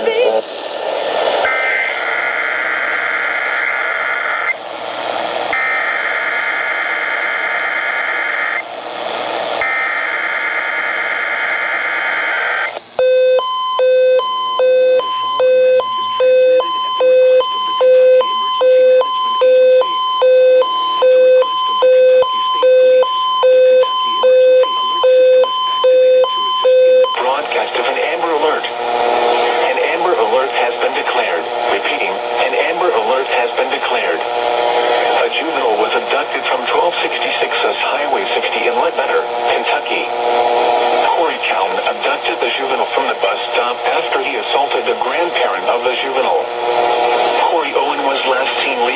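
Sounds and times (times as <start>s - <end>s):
pulsing beeping attention tone: 13.0s - 27.2s.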